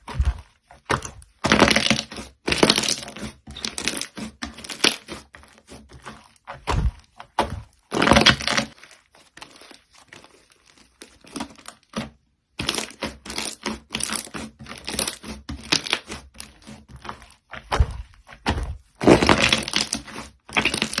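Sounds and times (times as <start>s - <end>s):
slime crackling and popping: 1.0s - 5.1s, 19.0s - 21.0s.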